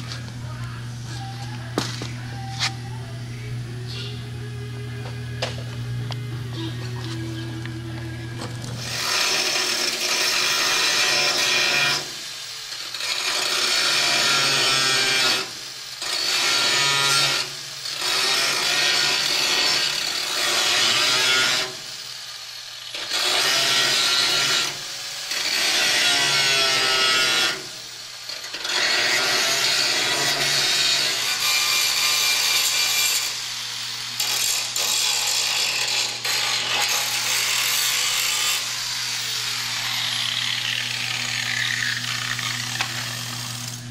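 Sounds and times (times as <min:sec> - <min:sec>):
steady low hum: 0:00.0 - 0:09.0
power sander on steel: 0:04.8 - 0:43.9.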